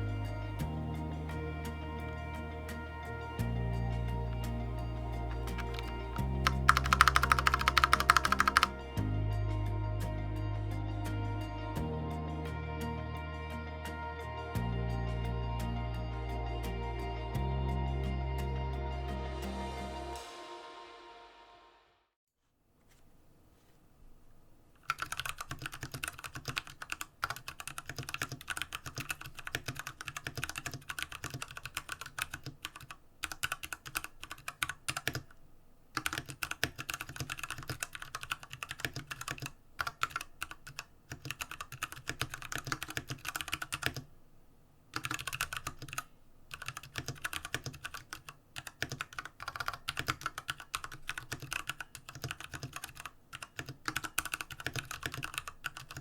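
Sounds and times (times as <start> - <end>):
mechanical keyboard typing: 5.3 - 8.8, 24.8 - 35.4, 36.0 - 44.1, 45.0 - 56.0.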